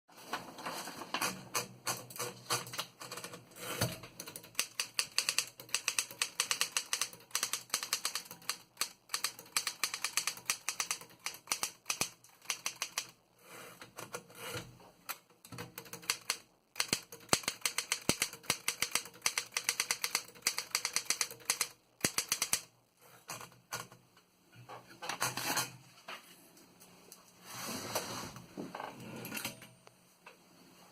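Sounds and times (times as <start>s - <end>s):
typewriter typing: 1.2s - 13.2s, 15.5s - 22.7s.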